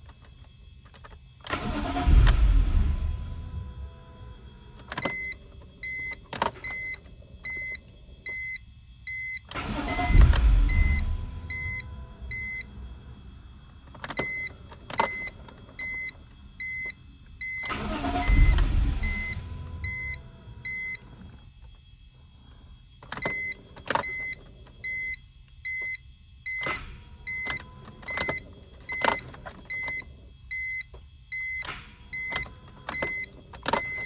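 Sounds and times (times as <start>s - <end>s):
car engine cranking: 0.0s - 8.4s, 9.4s - 24.9s, 31.0s - 34.0s
electronic warning beep: 4.9s - 21.4s, 22.4s - 34.0s.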